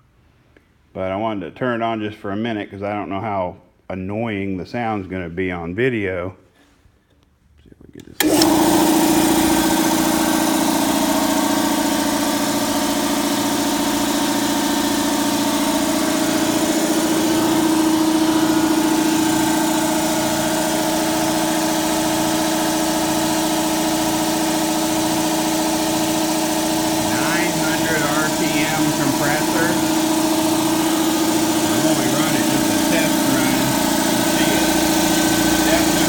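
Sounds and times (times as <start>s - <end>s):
air compressor running: 8.2s - 36.0s.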